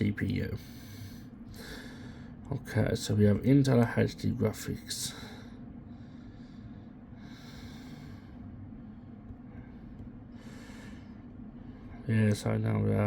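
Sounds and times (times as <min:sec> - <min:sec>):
faint low hum: 0:00.0 - 0:13.0
person breathing: 0:00.6 - 0:02.4, 0:05.1 - 0:12.1.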